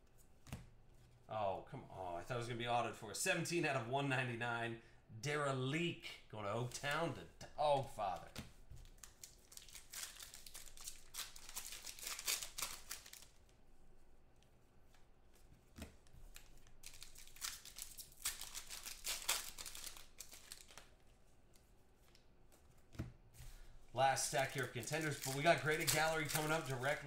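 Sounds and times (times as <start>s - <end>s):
card wrappers tearing and crinkling: 8.2s - 13.4s, 16.3s - 20.9s, 24.1s - 27.0s.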